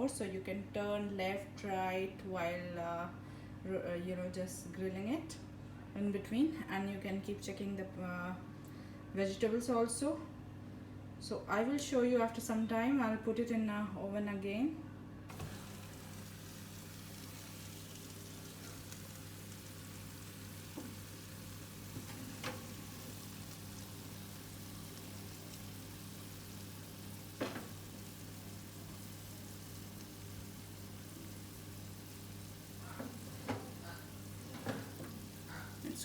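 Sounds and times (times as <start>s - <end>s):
low oven hum: 0.0s - 36.0s
chicken sizzling in oven: 15.3s - 36.0s.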